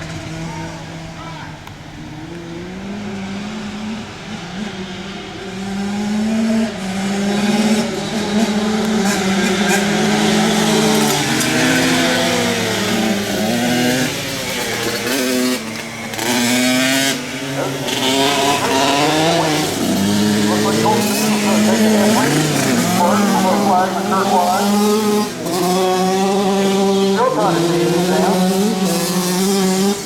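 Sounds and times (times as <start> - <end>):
racing motorcycle engines revving: 0.0 - 30.0.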